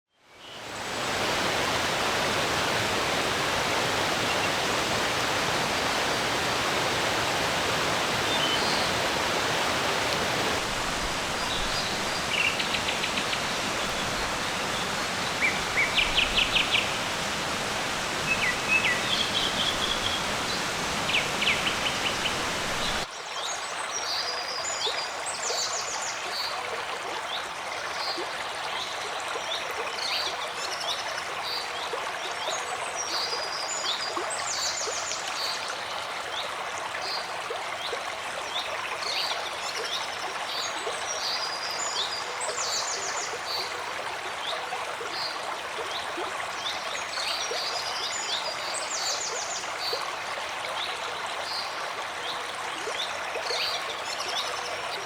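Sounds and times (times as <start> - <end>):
songbirds chirping and trilling: 0.4 - 23.1
stream rushing: 0.4 - 23.1.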